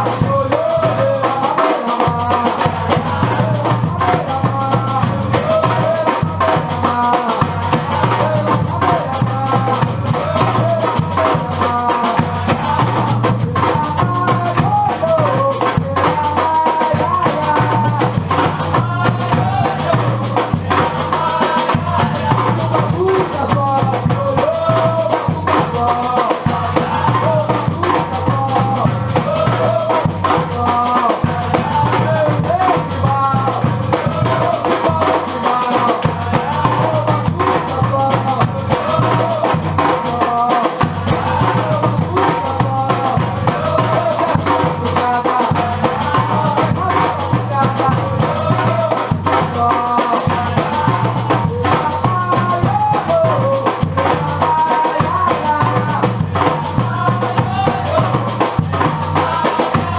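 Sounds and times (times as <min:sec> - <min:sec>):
percussion group drumming: 0:00.0 - 0:59.9
deep bass drums: 0:17.0 - 0:25.9, 0:26.5 - 0:35.1, 0:40.8 - 0:49.6, 0:55.1 - 0:59.9.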